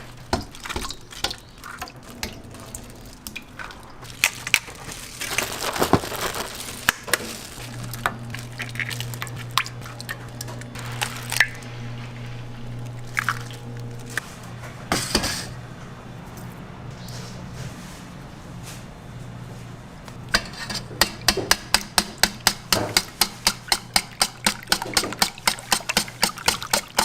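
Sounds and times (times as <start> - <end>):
low steady hum: 0.0 - 27.0
utensils and dishes clinking: 20.3 - 27.0.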